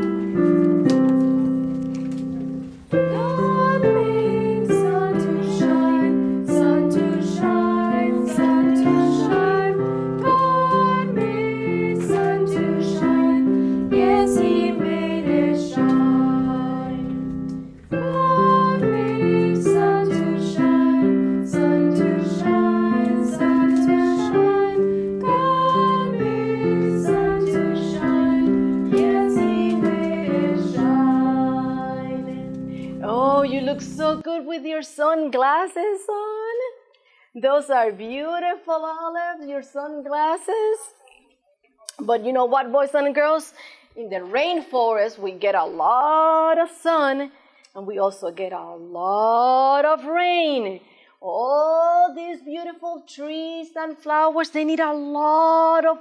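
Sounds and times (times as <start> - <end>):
keyboard accompaniment: 0.0 - 34.2
woman singing: 3.0 - 17.3, 17.9 - 36.6.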